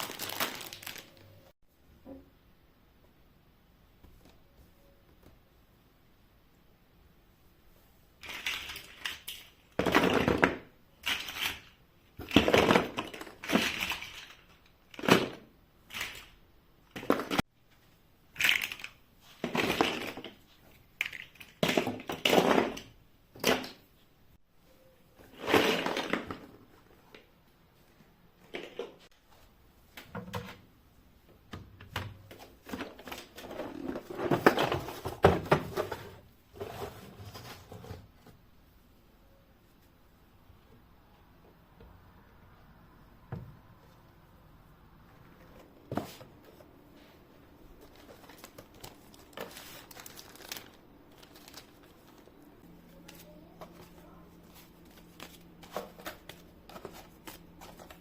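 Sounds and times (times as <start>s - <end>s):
household items rustling and scraping: 7.9s - 17.5s, 18.4s - 23.8s, 24.8s - 30.6s, 31.9s - 38.6s, 45.0s - 58.0s.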